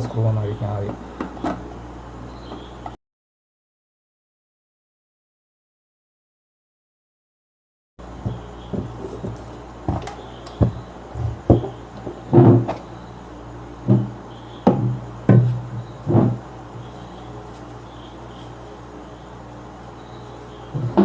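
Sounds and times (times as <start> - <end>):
steady low hum: 0.0 - 3.0, 8.0 - 21.0
knocks and clatter of casing: 8.2 - 12.9.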